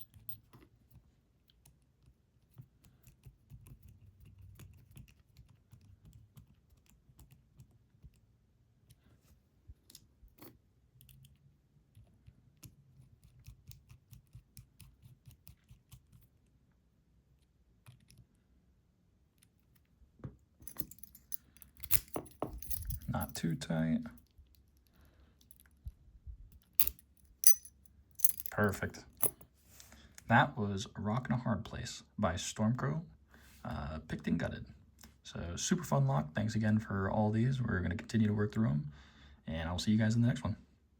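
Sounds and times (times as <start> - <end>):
metal lock parts clicking: 0.0 - 0.5, 20.6 - 23.5, 26.6 - 29.4.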